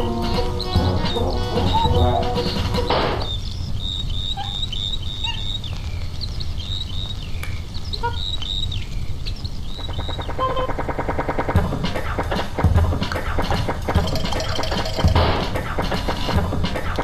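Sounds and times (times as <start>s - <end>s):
birds chirping: 0.0s - 17.0s.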